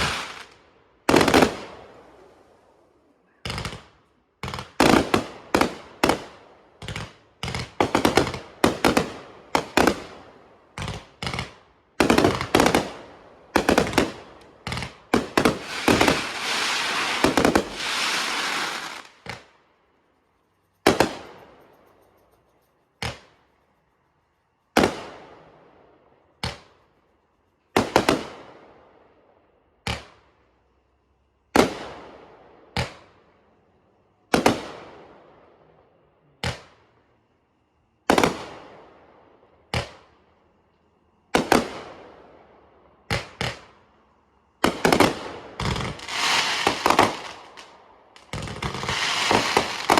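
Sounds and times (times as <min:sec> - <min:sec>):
fireworks bangs: 0:00.0 - 0:02.2, 0:03.4 - 0:19.6, 0:20.8 - 0:21.7, 0:27.7 - 0:28.8, 0:38.0 - 0:38.9, 0:41.3 - 0:42.2, 0:44.6 - 0:49.9
fireworks crackling hiss: 0:00.0 - 0:03.9, 0:04.5 - 0:19.6, 0:44.6 - 0:49.9.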